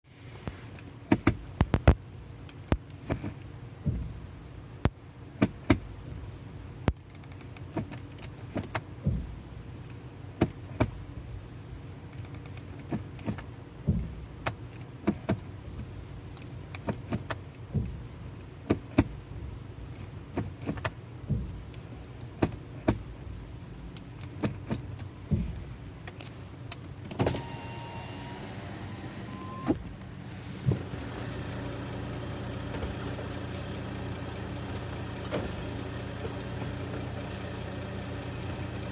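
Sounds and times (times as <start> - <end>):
car engine idling: 0.1 - 38.9
transmission clunks: 0.7 - 6.2, 6.9 - 11.1, 12.1 - 33.8
engine whine: 23.2 - 38.9.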